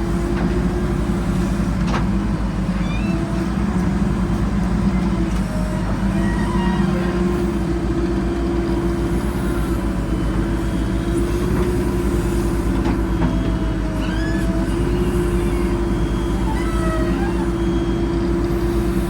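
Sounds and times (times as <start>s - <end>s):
diesel engine running under load: 0.0s - 19.0s
short high squeaks: 2.8s - 3.4s, 6.1s - 7.2s, 14.0s - 18.0s.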